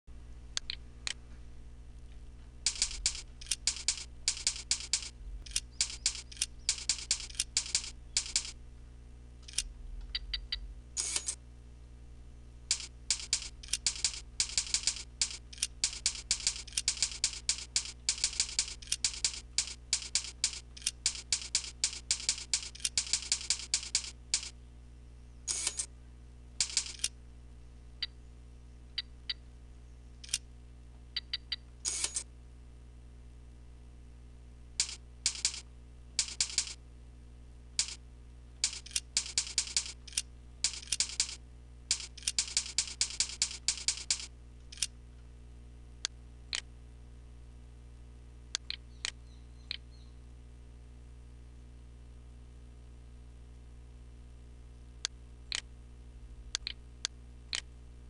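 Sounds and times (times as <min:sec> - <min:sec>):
low electrical hum: 0:00.1 - 0:58.0
keyboard and mouse clicking: 0:00.6 - 0:00.8, 0:02.7 - 0:08.6, 0:09.4 - 0:11.4, 0:12.7 - 0:24.6, 0:26.6 - 0:27.1, 0:30.2 - 0:30.4, 0:31.2 - 0:32.2, 0:34.8 - 0:36.8, 0:37.8 - 0:38.0, 0:38.6 - 0:44.9, 0:48.6 - 0:49.8, 0:56.6 - 0:56.8.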